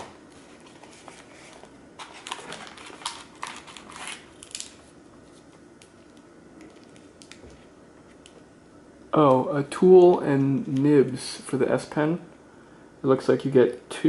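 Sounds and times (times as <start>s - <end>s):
paper rustling and clicking: 0.0s - 7.6s.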